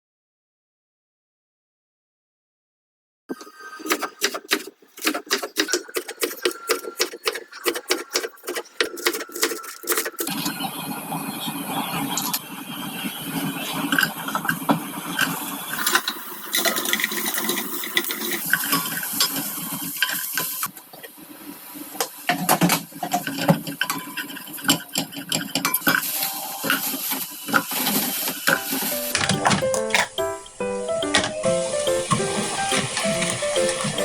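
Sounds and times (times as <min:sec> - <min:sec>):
utensils clinking against cookware: 0:03.8 - 0:10.4, 0:22.5 - 0:34.0.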